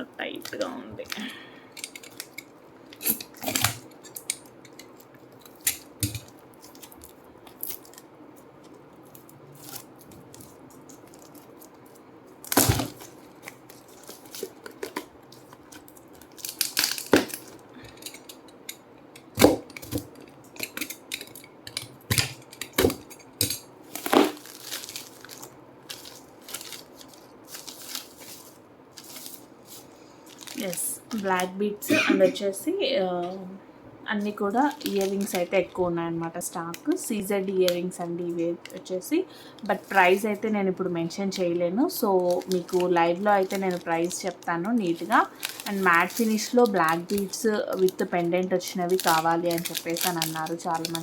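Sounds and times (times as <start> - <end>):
packaging being torn and crumpled: 9.1 - 17.6, 23.9 - 29.4, 30.3 - 30.8, 44.9 - 47.4, 48.9 - 51.0.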